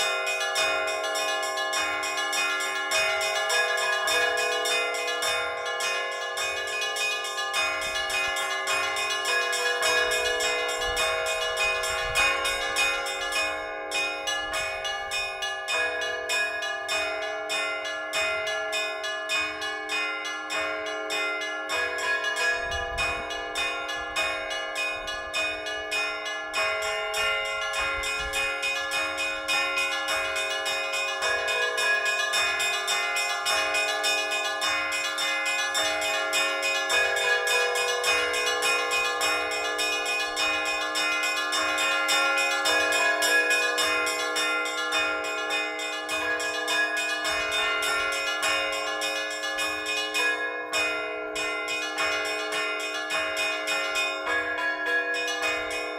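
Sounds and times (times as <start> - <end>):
large bells ringing: 0.0 - 55.9
small bells struck quickly: 19.3 - 55.9.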